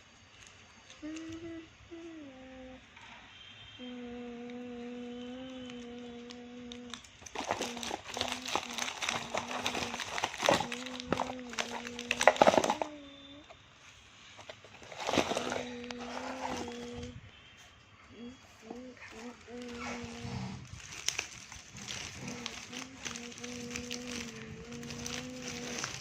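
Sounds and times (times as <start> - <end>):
person humming a low note: 1.0 - 2.9, 3.8 - 7.0, 15.4 - 17.2, 22.1 - 26.0
plastic packaging crinkling: 5.0 - 13.1, 14.2 - 17.2, 18.5 - 26.0.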